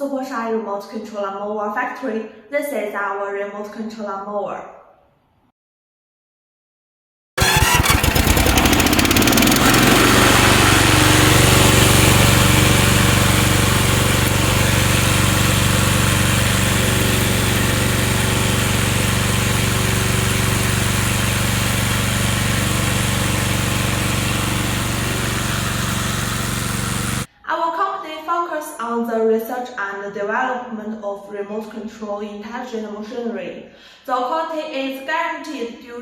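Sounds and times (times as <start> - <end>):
lawn mower engine starting: 7.4 - 27.3.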